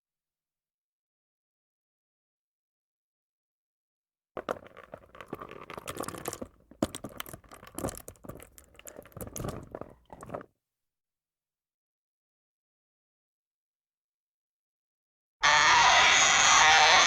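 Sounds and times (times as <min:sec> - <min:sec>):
crunching and tearing crackles: 0:04.4 - 0:10.4.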